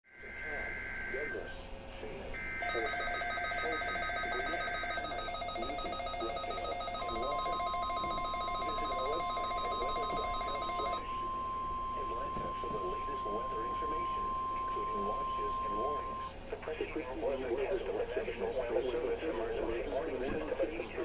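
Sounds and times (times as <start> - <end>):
warbling data-burst tones: 2.4 - 16.3.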